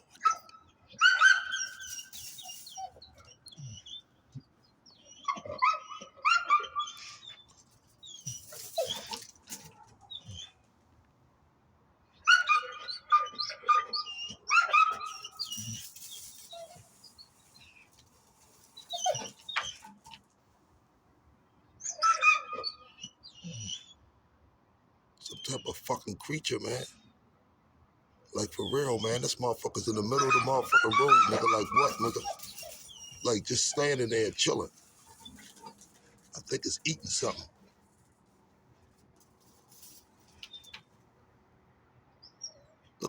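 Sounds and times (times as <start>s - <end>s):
dog whining and whimpering: 1.0s - 4.0s, 5.0s - 7.3s, 8.2s - 10.5s, 12.3s - 17.0s, 18.4s - 20.2s, 21.9s - 24.0s, 30.1s - 33.8s.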